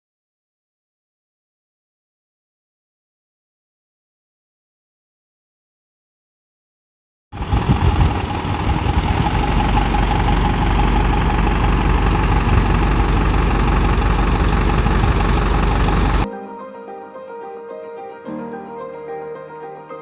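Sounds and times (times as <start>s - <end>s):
bus engine rumbling: 7.4s - 16.3s
piano music: 8.2s - 20.0s.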